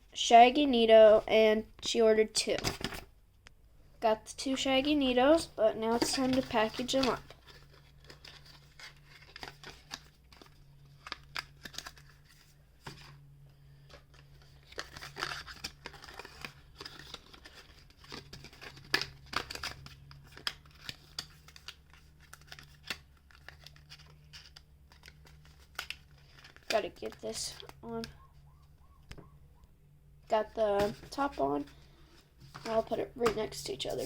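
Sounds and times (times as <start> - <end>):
packaging crinkling and rustling: 5.8 - 13.2, 13.9 - 28.3.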